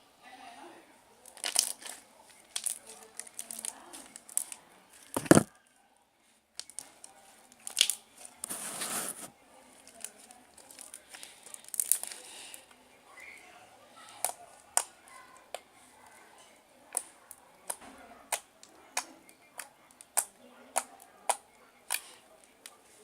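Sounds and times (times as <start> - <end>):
slime squishing and popping: 1.3 - 4.6, 7.6 - 8.0, 11.6 - 12.2.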